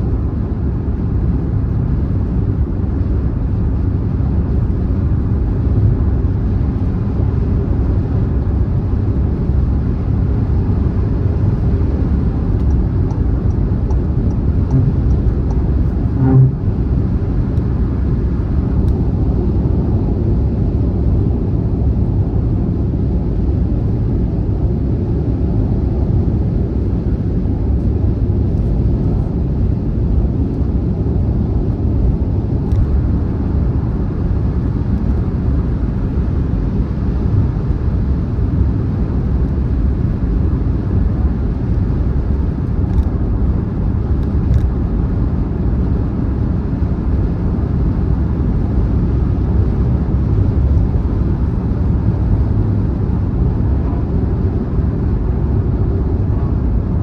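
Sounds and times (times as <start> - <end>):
tyre and engine rumble: 11.5 - 17.3
brief thump: 14.7 - 15.2.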